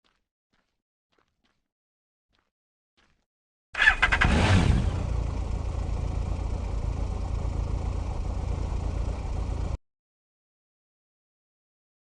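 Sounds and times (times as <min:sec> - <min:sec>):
motorcycle engine idling: 0:03.8 - 0:09.8.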